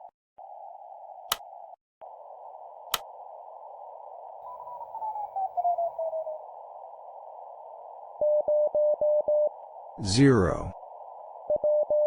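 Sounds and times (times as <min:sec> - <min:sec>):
radio band noise hiss: 0:09.8 - 0:11.2.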